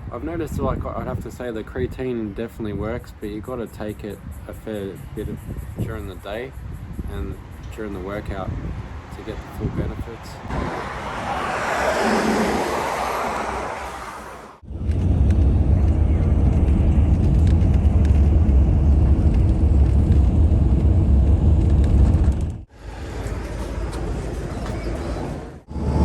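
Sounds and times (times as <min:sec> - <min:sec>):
road vehicle rumble: 0:00.0 - 0:26.0.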